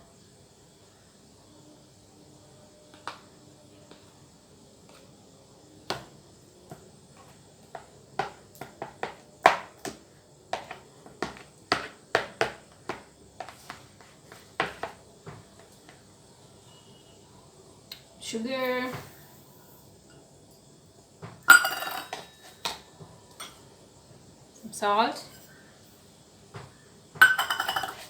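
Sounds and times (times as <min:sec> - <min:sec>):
kitchen utensils clicking and knocking: 0:21.5 - 0:22.5, 0:27.2 - 0:28.0.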